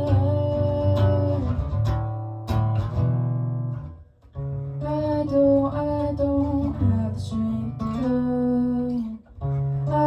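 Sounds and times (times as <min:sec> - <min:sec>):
person singing: 0:00.0 - 0:01.8, 0:04.8 - 0:10.0.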